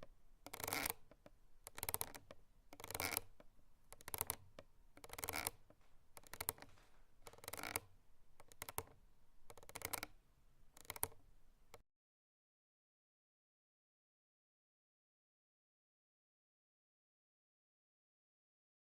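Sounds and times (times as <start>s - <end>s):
rope creaking: 0.0s - 3.4s, 5.0s - 10.1s.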